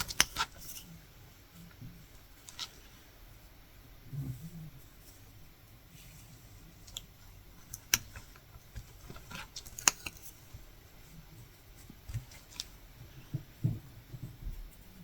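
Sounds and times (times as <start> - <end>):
soft rustles of yarn: 0.6 - 7.3.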